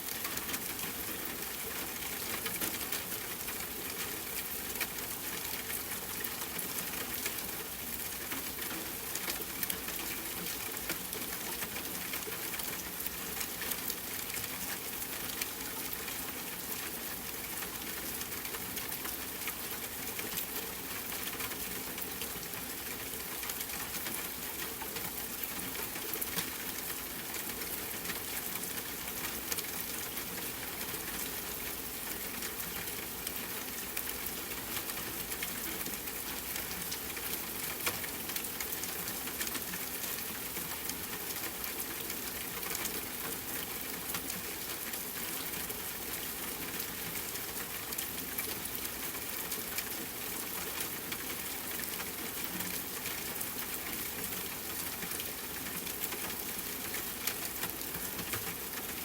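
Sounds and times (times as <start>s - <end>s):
rain pattering on a tent: 0.0s - 59.0s.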